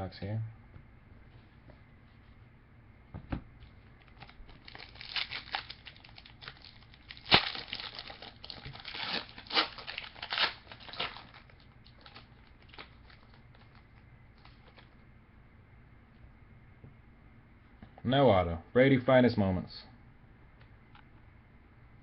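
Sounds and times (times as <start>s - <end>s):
wrapper crinkling and tearing: 4.0s - 14.9s
wrapper snap: 4.0s - 14.9s.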